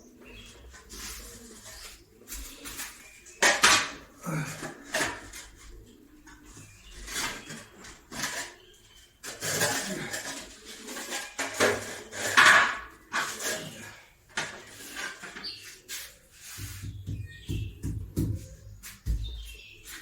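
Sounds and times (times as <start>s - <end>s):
dishes pots and cutlery clattering: 2.8s - 15.6s.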